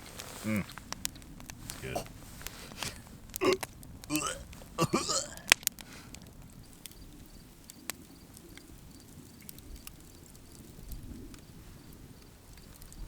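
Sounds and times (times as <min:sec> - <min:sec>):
insects chirping: 0:06.6 - 0:10.8.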